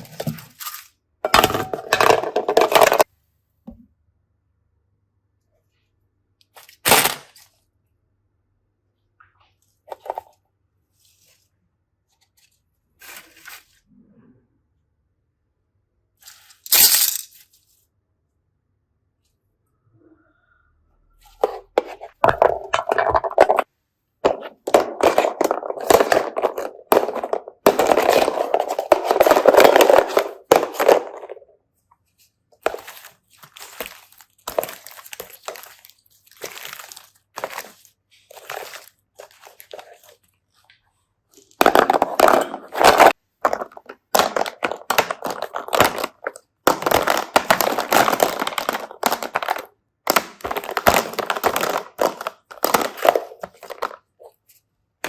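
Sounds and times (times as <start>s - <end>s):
slime crackling and crunching: 32.6s - 40.1s.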